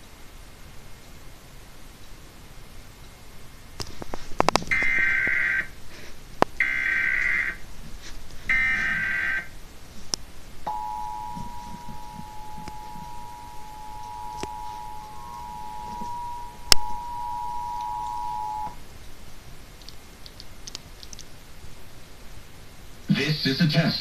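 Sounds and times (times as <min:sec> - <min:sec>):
two-tone attention signal: 0:10.7 - 0:18.8.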